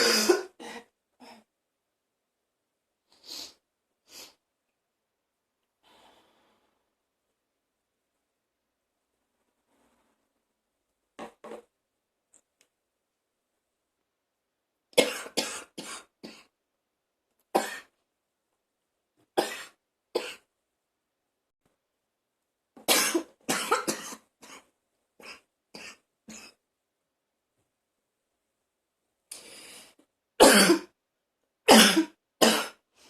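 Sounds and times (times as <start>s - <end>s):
woman coughing harshly: 0.0s - 0.9s, 15.0s - 16.4s, 19.4s - 20.4s, 22.9s - 24.6s, 30.4s - 30.9s, 31.7s - 32.8s.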